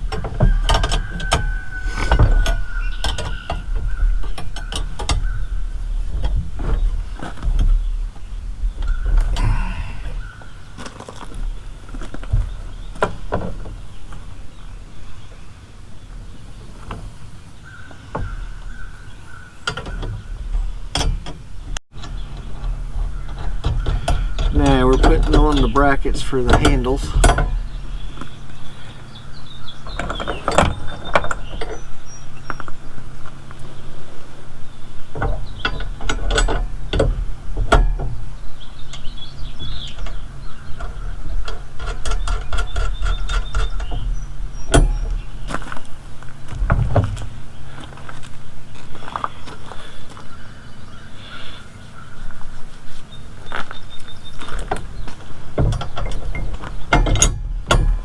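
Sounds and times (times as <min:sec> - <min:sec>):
steady low hum: 0:00.0 - 0:16.9, 0:20.1 - 0:50.2
metal tools clinking and knocking: 0:22.0 - 0:28.3, 0:55.6 - 0:58.0.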